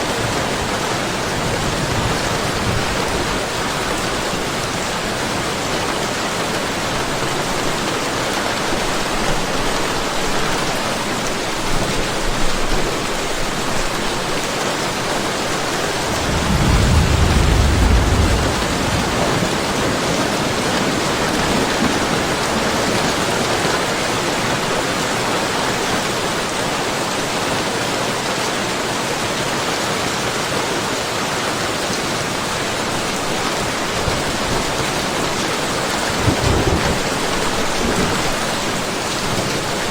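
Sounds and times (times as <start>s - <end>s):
steady rain falling: 0.0s - 39.9s
low rumble of thunder: 0.2s - 4.2s, 15.9s - 23.4s, 34.0s - 39.4s.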